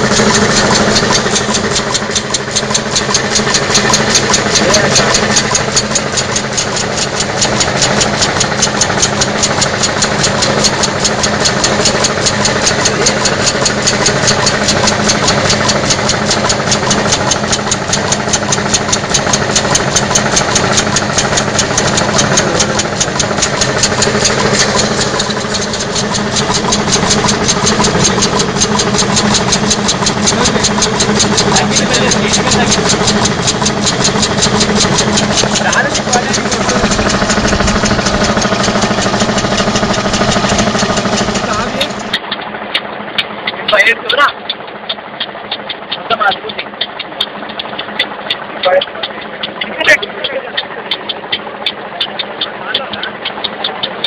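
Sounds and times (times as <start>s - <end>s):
air-powered engine clicking: 0.0s - 54.0s
constant hum: 0.0s - 54.0s.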